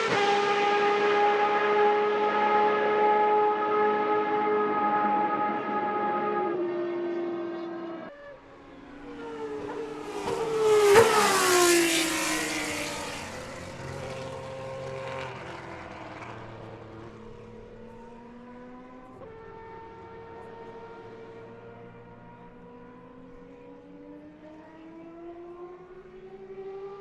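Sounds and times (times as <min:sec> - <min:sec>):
racing car passing at high speed: 0:00.0 - 0:27.0.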